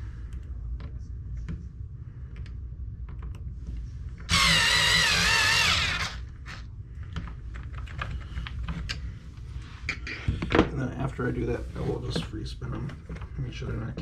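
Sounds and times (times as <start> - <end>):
power driver whine: 4.3 - 6.6.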